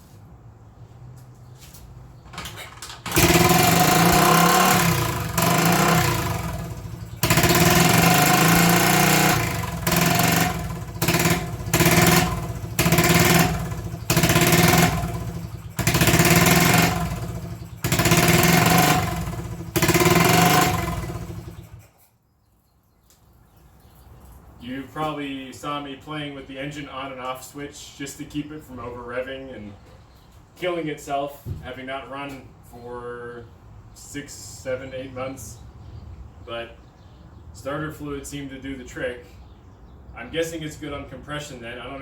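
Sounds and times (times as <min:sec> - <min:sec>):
motorcycle engine revving high: 0:03.1 - 0:21.8.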